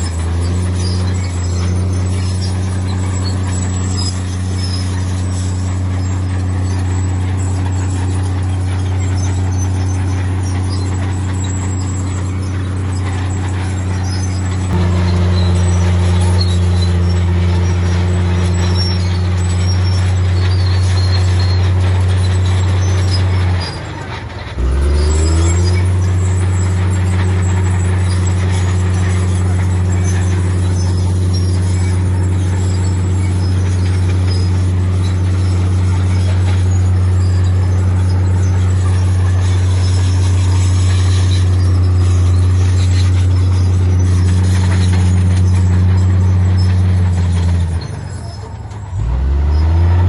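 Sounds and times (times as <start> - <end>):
heavy diesel engine droning: 0.0 - 50.0.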